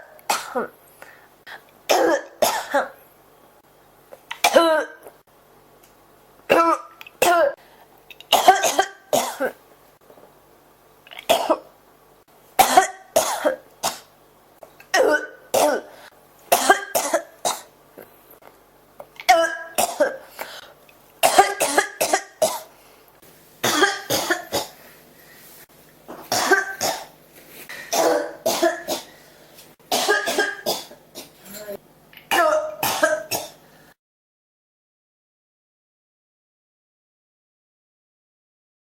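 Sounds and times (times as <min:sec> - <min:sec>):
woman coughing: 0:00.0 - 0:00.8, 0:01.9 - 0:03.0, 0:04.4 - 0:05.1, 0:06.5 - 0:07.6, 0:08.4 - 0:09.6, 0:11.3 - 0:11.6, 0:12.6 - 0:14.1, 0:14.9 - 0:16.0, 0:16.6 - 0:17.7, 0:19.3 - 0:20.3, 0:21.2 - 0:22.7, 0:23.7 - 0:24.8, 0:26.1 - 0:27.1, 0:27.8 - 0:29.1, 0:29.9 - 0:33.6.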